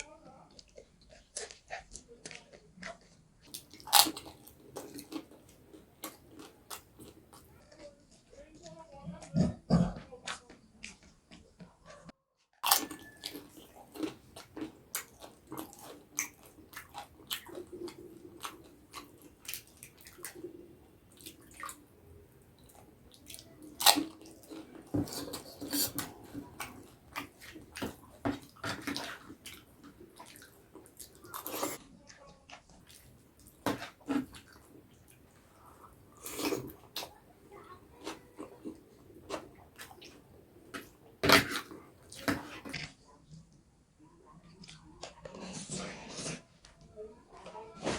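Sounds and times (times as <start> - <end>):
wet chewing and mouth sounds: 0.4 - 43.1.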